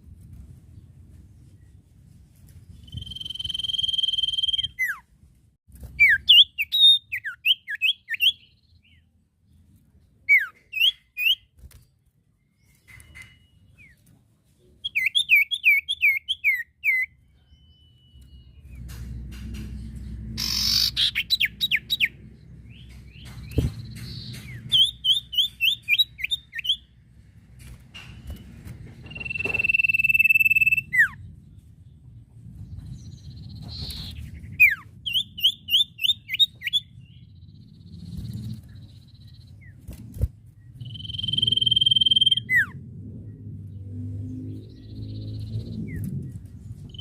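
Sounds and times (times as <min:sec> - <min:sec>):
bird chirps: 0:02.7 - 0:05.0, 0:05.9 - 0:11.6, 0:12.4 - 0:27.0, 0:28.1 - 0:32.0, 0:32.6 - 0:39.9, 0:40.6 - 0:42.7, 0:43.3 - 0:47.0
bird whistles with downward slur: 0:02.8 - 0:05.0, 0:29.1 - 0:31.2, 0:40.8 - 0:42.8.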